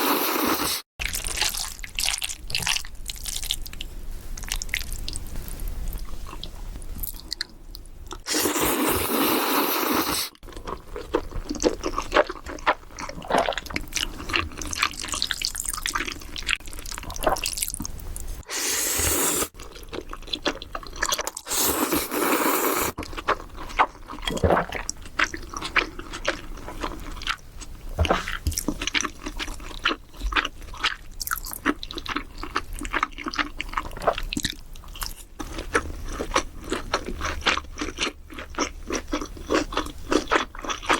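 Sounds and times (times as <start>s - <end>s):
loud noodle slurps: 0.0s - 0.8s, 8.3s - 10.4s, 18.4s - 19.6s, 21.4s - 23.0s.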